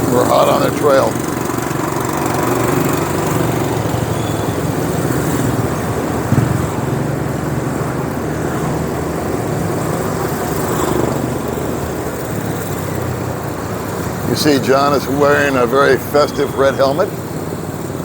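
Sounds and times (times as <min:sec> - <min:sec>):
small motorbike engine running: 0:00.0 - 0:18.0
wind and road noise: 0:00.0 - 0:18.0
short thump: 0:06.3 - 0:06.9.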